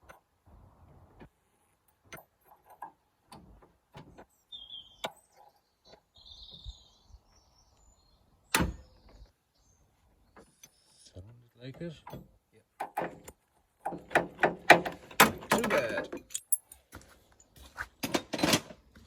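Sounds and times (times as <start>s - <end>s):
hand tools clicking and knocking: 12.0s - 17.0s.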